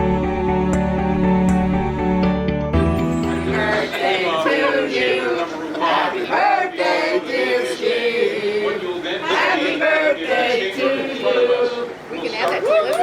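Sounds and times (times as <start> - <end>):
crowd talking and calling out: 2.8 - 6.7.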